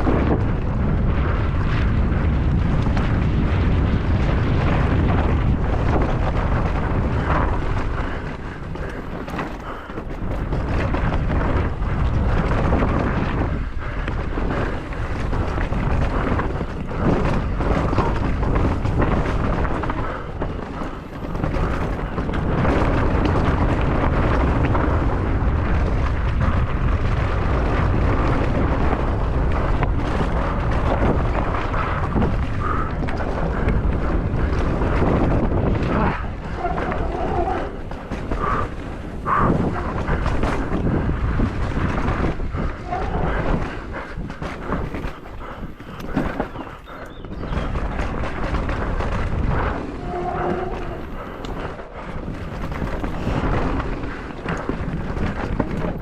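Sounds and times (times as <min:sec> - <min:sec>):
bike rumbling over rough ground: 0:00.0 - 0:56.0
wind buffeting microphone: 0:00.0 - 0:56.0.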